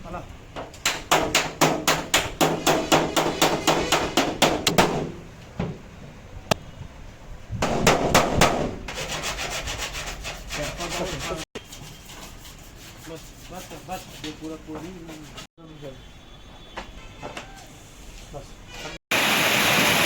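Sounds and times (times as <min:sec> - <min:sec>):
sandpaper scraping strokes: 0:08.9 - 0:15.5.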